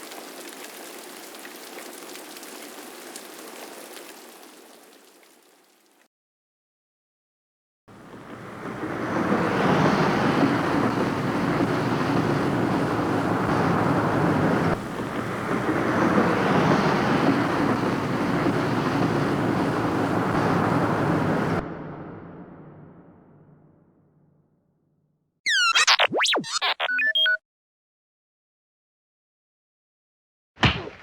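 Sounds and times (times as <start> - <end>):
steady rushing noise: 8.0 - 22.9.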